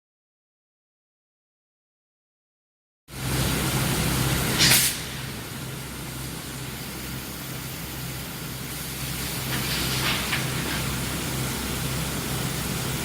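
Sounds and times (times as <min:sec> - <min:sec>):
industrial machine noise: 0:03.1 - 0:13.0
loud hiss: 0:03.2 - 0:13.0.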